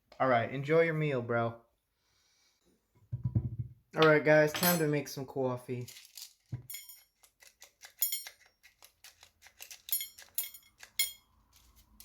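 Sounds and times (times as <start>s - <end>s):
kitchenware knocks and clicks: 3.1s - 4.9s
ringing clinks of crockery: 6.7s - 7.0s, 8.0s - 8.4s, 9.9s - 11.2s.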